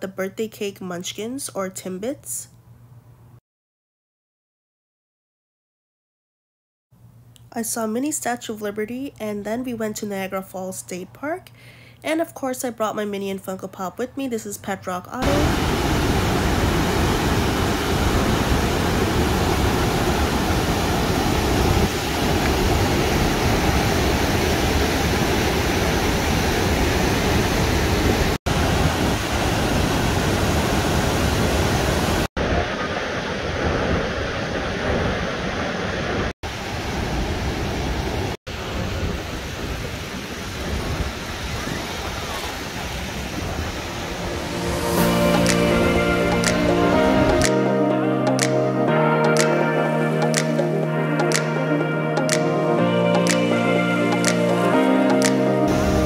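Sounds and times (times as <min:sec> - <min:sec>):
roar of rushing water: 0:15.2 - 0:45.5.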